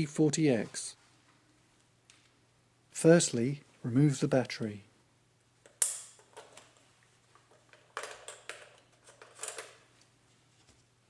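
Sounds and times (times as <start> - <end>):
plastic scraping and clicks: 5.7 - 9.8.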